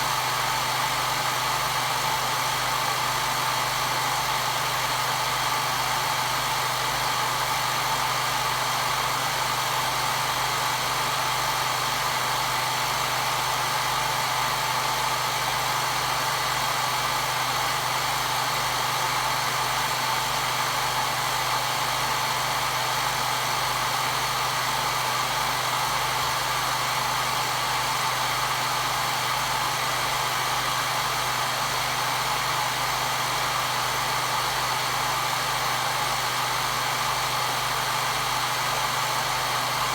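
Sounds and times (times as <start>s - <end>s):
hair dryer running: 21.1s - 39.9s.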